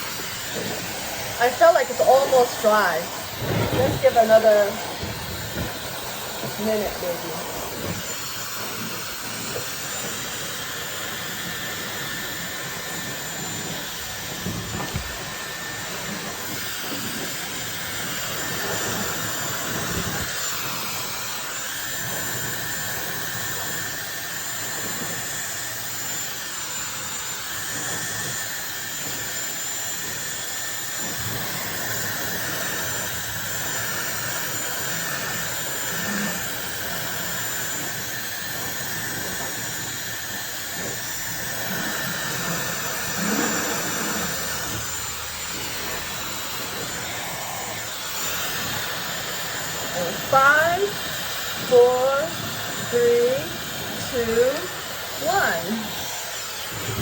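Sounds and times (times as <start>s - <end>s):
hair dryer blowing: 0.0s - 57.0s
air buffeting thuds: 1.5s - 8.2s, 14.0s - 17.3s.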